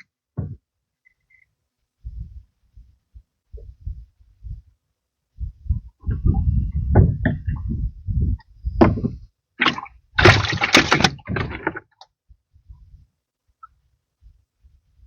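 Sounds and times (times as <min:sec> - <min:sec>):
water splashing: 0:09.6 - 0:11.8.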